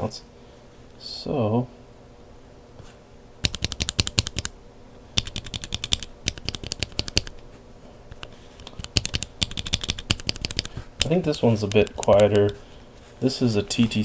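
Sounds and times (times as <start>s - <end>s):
mechanical keyboard key clacks: 3.4s - 4.5s, 5.2s - 7.3s, 8.1s - 12.6s.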